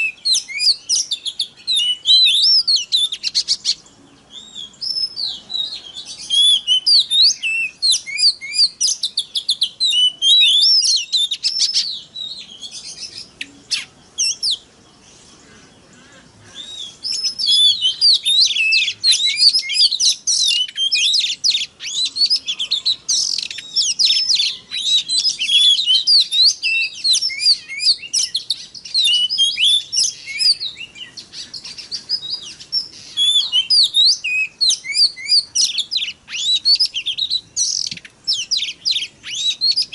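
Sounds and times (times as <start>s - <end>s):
bird singing whistles and chatter: 0.0s - 14.7s, 15.5s - 39.9s.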